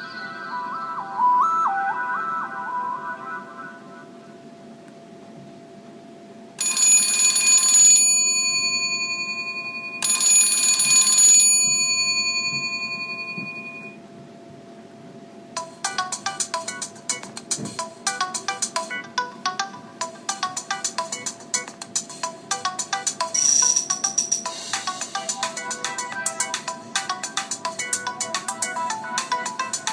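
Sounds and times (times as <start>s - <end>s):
bell-like phone chime: 6.6s - 14.0s, 22.8s - 29.9s.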